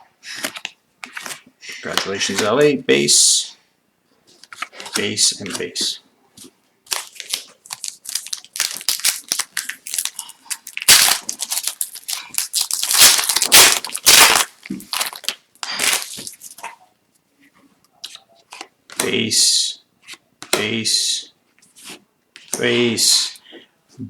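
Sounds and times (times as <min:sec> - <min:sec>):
foil wrapper tearing and crinkling: 0:06.9 - 0:16.6.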